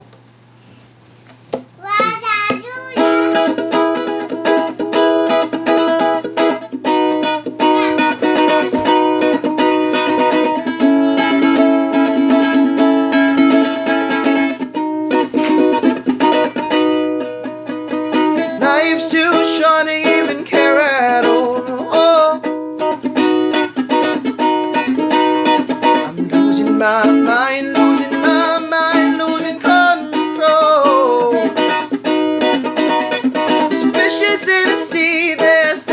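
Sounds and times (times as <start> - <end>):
ukulele strumming: 1.8 - 35.9
person humming: 7.6 - 9.6.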